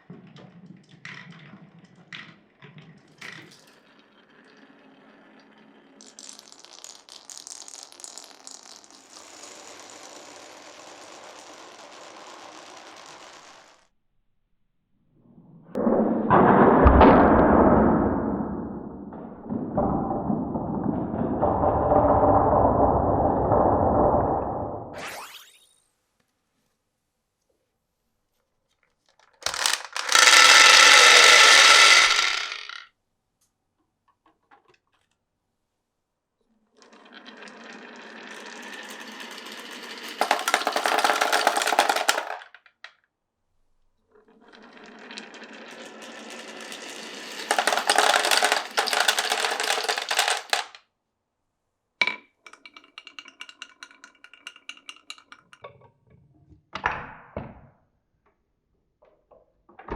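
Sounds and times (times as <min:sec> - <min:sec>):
marbles rolling down a marble run: 0:00.0 - 0:13.9, 0:29.3 - 0:32.9, 0:36.8 - 0:42.9, 0:44.3 - 0:50.8
marbles clicking and clacking: 0:01.0 - 0:13.8, 0:29.4 - 0:32.8, 0:36.8 - 0:42.8, 0:44.6 - 0:50.8, 0:52.4 - 0:55.6
marbles rattling: 0:03.2 - 0:13.8, 0:29.4 - 0:32.8, 0:37.6 - 0:42.6, 0:44.9 - 0:50.8.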